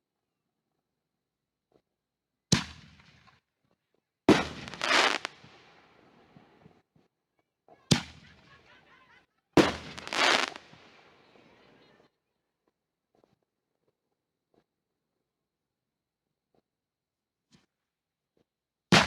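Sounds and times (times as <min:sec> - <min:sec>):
firework bangs: 0:04.3 - 0:05.8, 0:09.6 - 0:11.5
firework crackling burst: 0:04.3 - 0:05.8, 0:09.6 - 0:11.4.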